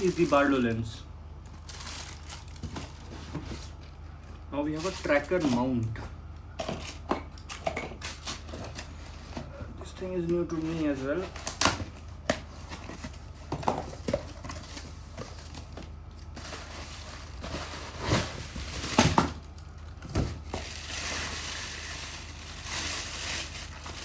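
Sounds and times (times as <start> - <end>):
packaging rustle: 0.0 - 5.6, 10.5 - 24.0
plastic crinkling: 0.0 - 5.7, 10.5 - 24.0.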